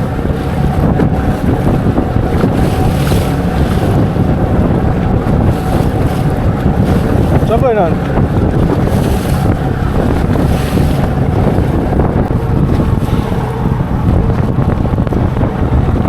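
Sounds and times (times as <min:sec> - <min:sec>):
boat motor: 0:00.0 - 0:16.0
rushing water: 0:00.0 - 0:16.0
wind buffeting microphone: 0:00.0 - 0:16.0.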